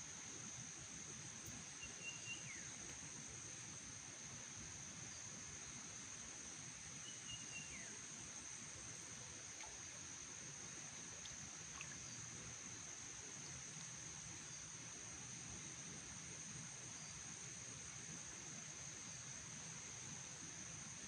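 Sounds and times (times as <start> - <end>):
outdoor background hiss: 0.0 - 21.0
crickets trilling: 0.1 - 21.0
faint chirps: 1.4 - 3.0, 7.0 - 8.1.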